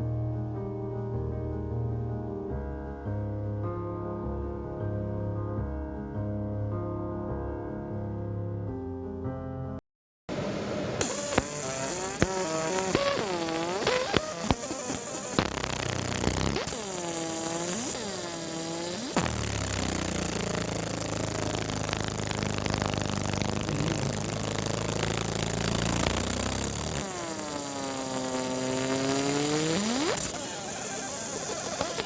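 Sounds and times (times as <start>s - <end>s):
low stepped motor tones: 11.0s - 32.0s
stepper motors whining: 11.0s - 32.0s.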